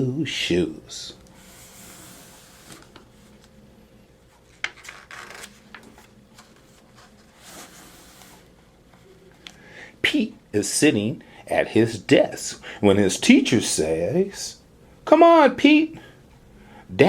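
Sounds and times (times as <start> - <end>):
book pages rustling: 1.2 - 3.6, 4.3 - 9.0.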